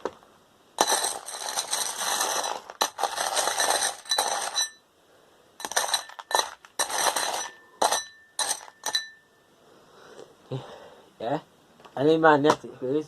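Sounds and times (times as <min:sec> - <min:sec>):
metal screws rattling: 0:00.8 - 0:04.8, 0:05.6 - 0:09.2.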